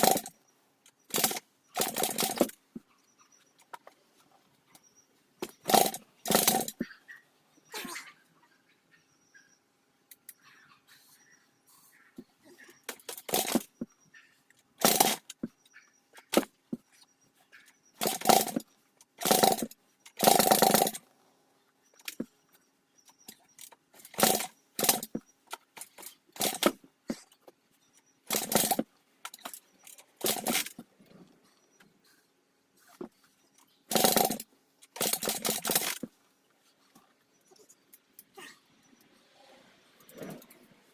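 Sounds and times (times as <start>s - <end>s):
dirt bike engine kick cranking: 1.1s - 2.6s, 5.4s - 6.8s, 14.8s - 15.5s, 18.0s - 21.0s, 23.6s - 26.9s, 28.3s - 30.8s, 33.9s - 36.1s.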